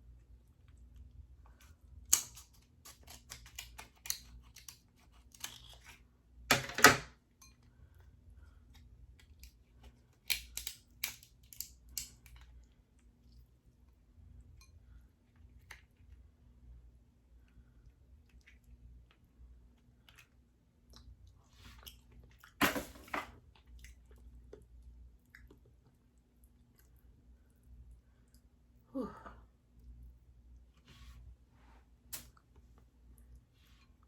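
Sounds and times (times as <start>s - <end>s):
crab shells cracking: 2.1s - 6.0s, 10.1s - 12.4s.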